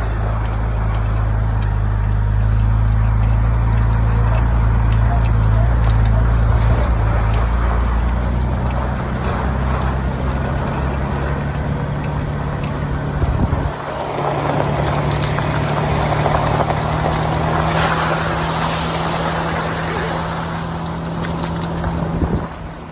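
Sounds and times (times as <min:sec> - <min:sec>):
motor humming: 0:00.0 - 0:22.9
wind noise: 0:00.0 - 0:22.9.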